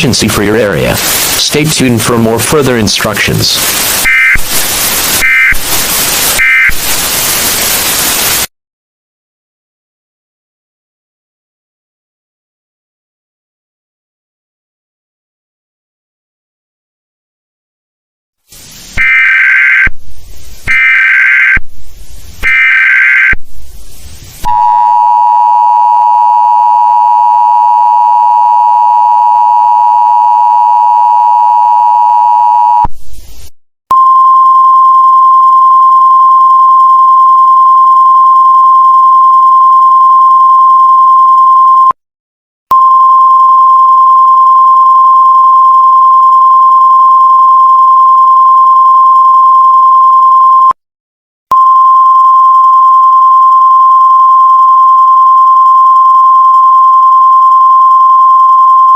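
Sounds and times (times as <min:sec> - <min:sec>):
harsh digital data bursts: 0:00.9 - 0:02.0, 0:02.6 - 0:08.5, 0:19.0 - 0:19.9, 0:20.7 - 0:21.6, 0:22.4 - 0:23.4.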